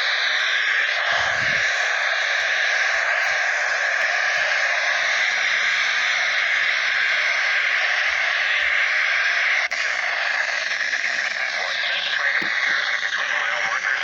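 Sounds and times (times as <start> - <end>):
radio static hiss: 0.0 - 14.0.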